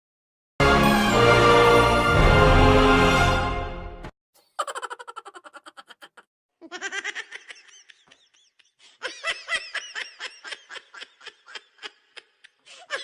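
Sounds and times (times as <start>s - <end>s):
rapid giggling: 4.5s - 13.0s
rapid laughing: 4.5s - 13.0s.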